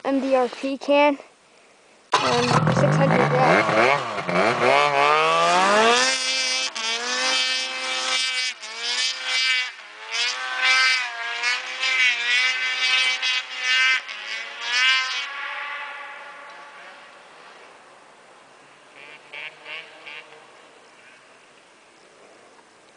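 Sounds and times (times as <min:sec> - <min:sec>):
snowmobile engine revving: 0:02.1 - 0:17.7, 0:18.7 - 0:21.3.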